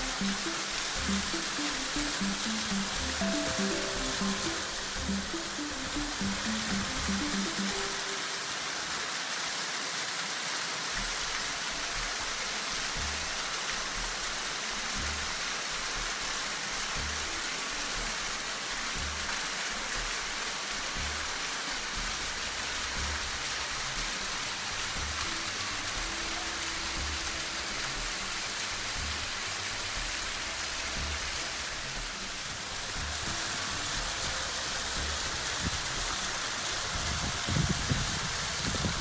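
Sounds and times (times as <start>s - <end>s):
waterfall splashing: 0.0s - 39.0s
dull low thumps: 13.0s - 13.3s, 15.0s - 15.4s, 17.0s - 17.3s, 19.0s - 19.4s, 21.0s - 21.3s, 22.0s - 24.2s, 24.8s - 25.3s, 28.9s - 29.4s.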